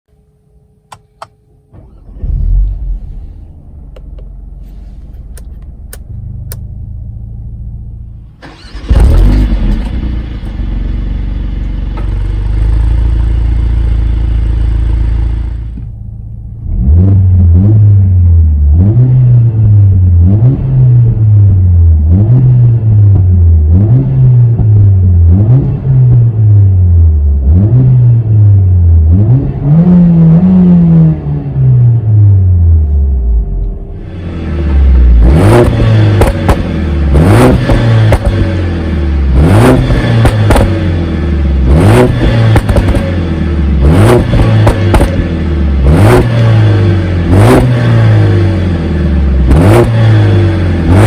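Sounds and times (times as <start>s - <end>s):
car engine starting and idling: 0.2s - 51.0s
car engine revving: 1.7s - 51.0s.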